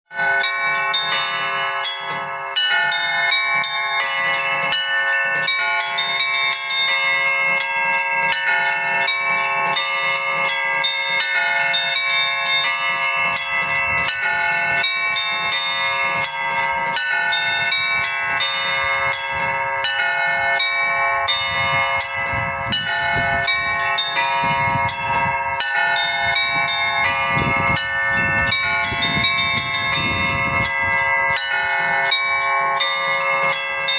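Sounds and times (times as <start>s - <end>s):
church bells ringing: 0.1s - 33.9s.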